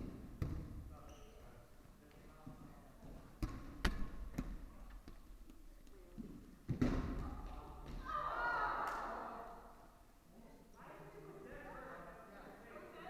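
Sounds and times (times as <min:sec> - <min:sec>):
dodgeballs hitting: 0:00.0 - 0:00.8, 0:03.4 - 0:05.2, 0:06.6 - 0:08.2.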